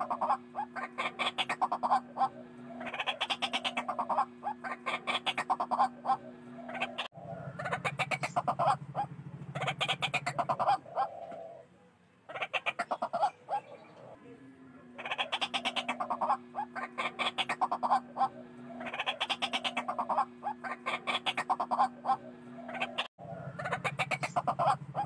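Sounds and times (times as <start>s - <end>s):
waterhen harsh pulsed calls: 0.0s - 11.5s, 15.0s - 25.0s.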